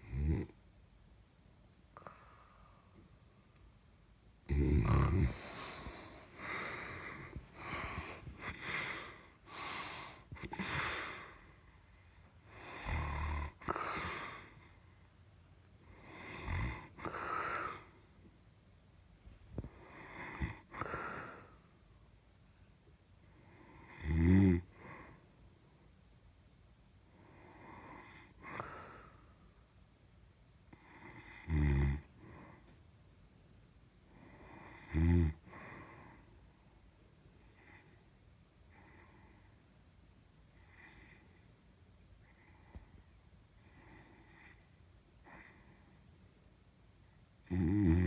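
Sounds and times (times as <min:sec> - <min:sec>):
person snoring: 0:00.0 - 0:00.6, 0:04.4 - 0:11.5, 0:12.5 - 0:14.6, 0:16.0 - 0:18.0, 0:19.7 - 0:21.6, 0:23.8 - 0:24.8, 0:31.0 - 0:32.1, 0:34.6 - 0:35.5, 0:47.4 - 0:48.0
hissing breaths: 0:04.9 - 0:11.5.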